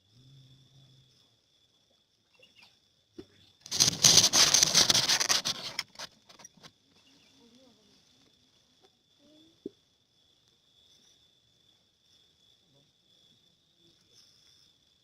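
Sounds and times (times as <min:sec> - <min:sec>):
rapid pattering burst: 0:03.7 - 0:06.4.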